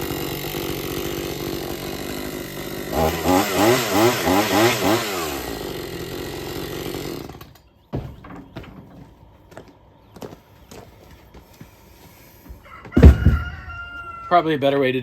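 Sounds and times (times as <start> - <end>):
chainsaw revving: 0.0 - 7.5.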